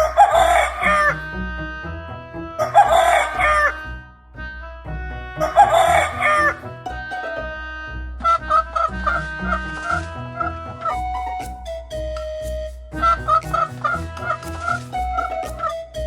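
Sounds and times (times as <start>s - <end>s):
rooster crowing: 0.0s - 1.2s, 2.6s - 3.7s, 5.4s - 6.5s
background music: 0.0s - 16.0s.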